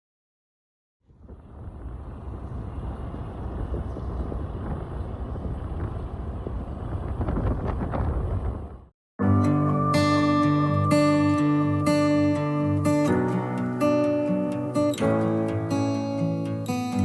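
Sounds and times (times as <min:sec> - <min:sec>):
wind buffeting microphone: 0:01.1 - 0:08.9.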